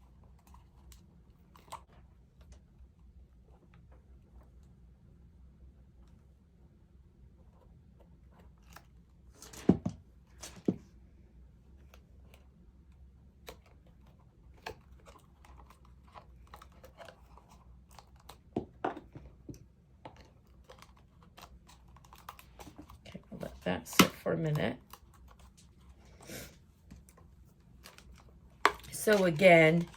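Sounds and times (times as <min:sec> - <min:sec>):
cardstock rustling and clicking: 0:13.3 - 0:26.0, 0:27.0 - 0:29.9.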